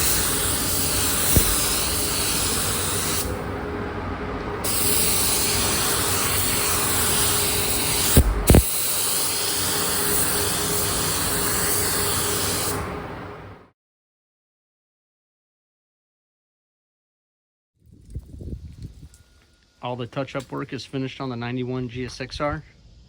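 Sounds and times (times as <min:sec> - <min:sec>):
spray paint hissing: 0:00.0 - 0:03.4, 0:04.6 - 0:13.0.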